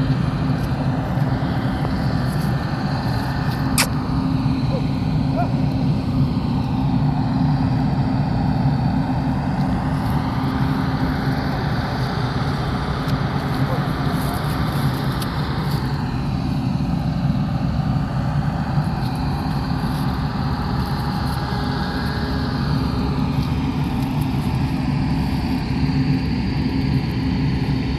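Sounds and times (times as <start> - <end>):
low engine drone: 0.0 - 27.9.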